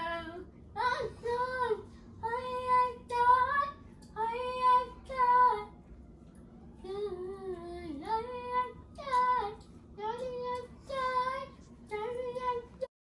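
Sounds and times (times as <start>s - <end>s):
child singing in a high voice: 6.8s - 12.9s.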